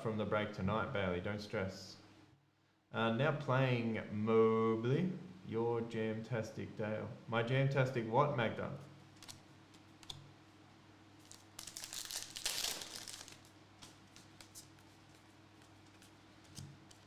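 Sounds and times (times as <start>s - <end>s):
foil wrapper crinkling and tearing: 11.2s - 16.1s.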